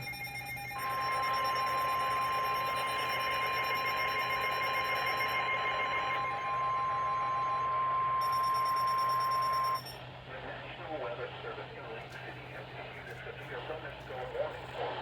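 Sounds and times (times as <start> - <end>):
emergency alert tone: 0.0 - 10.0.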